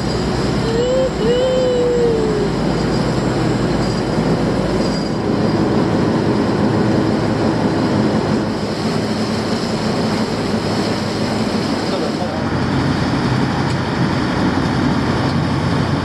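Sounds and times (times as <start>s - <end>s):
boat engine running: 0.0s - 16.0s
rushing noise of boat moving: 0.0s - 16.0s.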